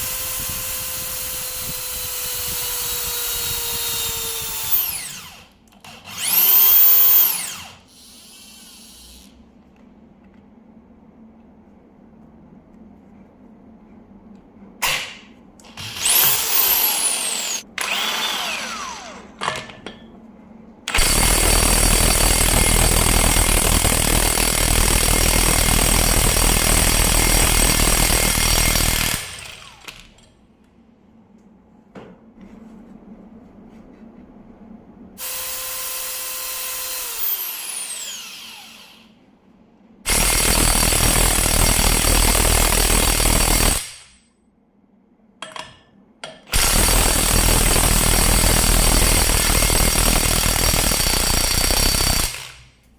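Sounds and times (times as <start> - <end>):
impact wrench spinning whine: 0.0 - 5.5, 15.7 - 19.3, 46.5 - 52.6.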